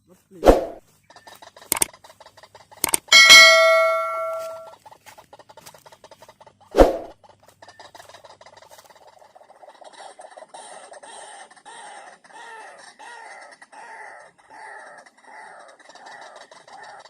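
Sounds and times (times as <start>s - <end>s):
sharp clicks: 1.7s - 1.9s, 2.8s - 4.7s
bell-like ding: 2.9s - 4.7s.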